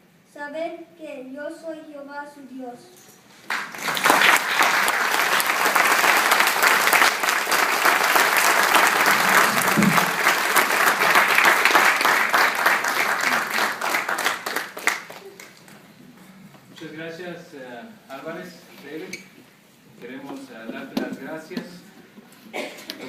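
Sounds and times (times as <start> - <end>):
audience applauding: 3.4 - 15.8.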